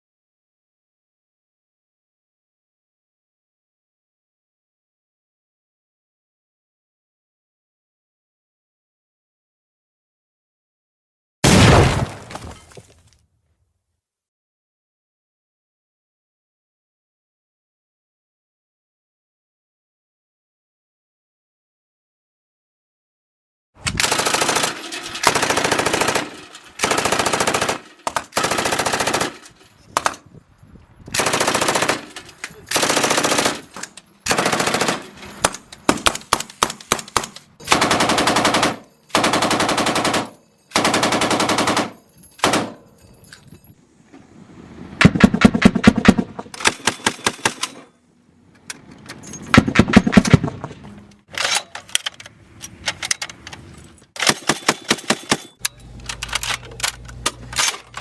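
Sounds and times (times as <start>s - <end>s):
automatic gunfire bursts: 24.0s - 29.4s, 31.2s - 32.1s, 32.8s - 33.7s, 34.3s - 35.0s, 37.7s - 42.7s.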